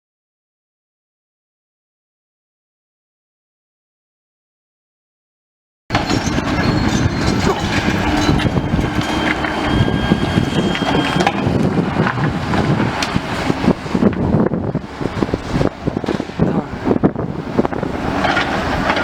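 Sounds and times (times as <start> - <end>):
thin metallic squeal: 5.9 - 11.6
debris crunching and scraping: 5.9 - 19.0
excavator engine running: 5.9 - 19.0.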